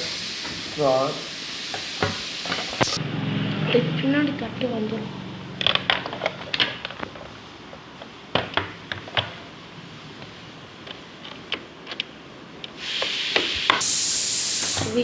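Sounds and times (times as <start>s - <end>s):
loud steady hiss: 0.0s - 3.0s, 12.2s - 15.0s.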